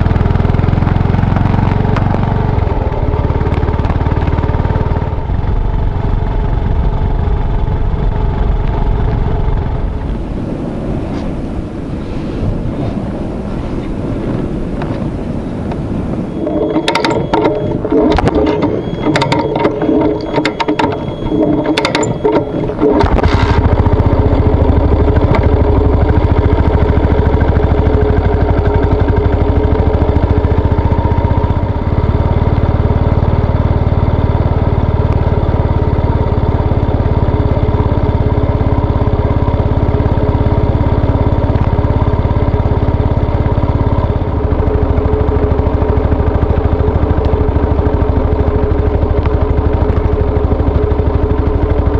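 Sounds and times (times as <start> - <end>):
motorcycle engine running: 0.0 - 12.0, 12.6 - 51.9
sharp clicks and crackles: 16.4 - 26.9.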